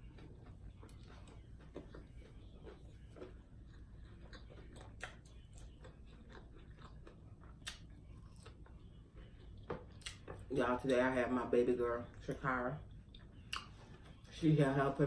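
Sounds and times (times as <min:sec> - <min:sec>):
faint chewing of food: 0:00.0 - 0:10.5, 0:12.8 - 0:14.2.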